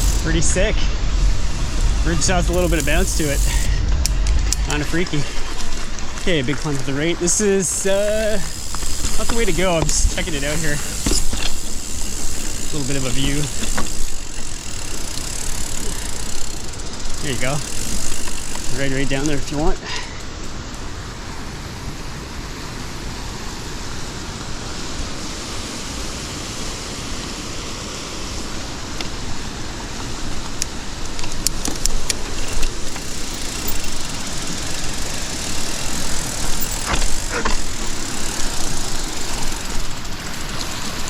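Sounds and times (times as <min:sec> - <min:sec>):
sharp clicks and rattles: 0:00.0 - 0:00.8, 0:01.7 - 0:19.6, 0:30.6 - 0:41.0
bike tyres rolling on trail: 0:00.0 - 0:41.0.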